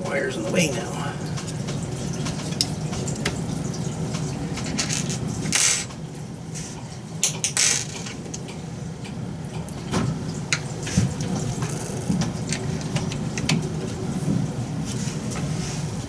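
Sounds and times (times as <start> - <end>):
steady low hum: 0.0 - 3.6
metal parts clicking and clinking: 4.7 - 5.9.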